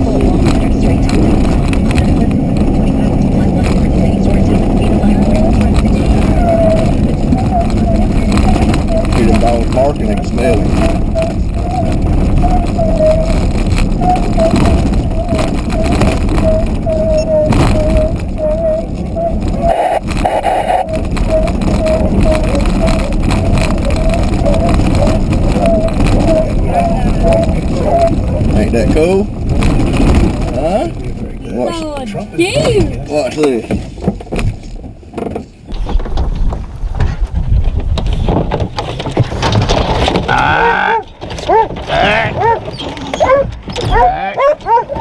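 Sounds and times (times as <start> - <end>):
loud low rumble: 0.0 - 33.3
hound dogs barking: 40.4 - 45.0.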